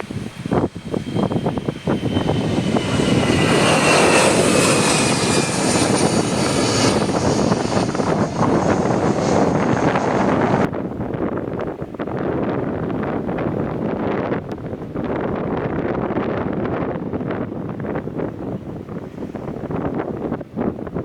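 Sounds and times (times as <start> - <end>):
high engine whine: 0.0 - 10.7
airliner engines rumbling: 0.0 - 21.0
wind gusts on microphone: 0.0 - 21.0.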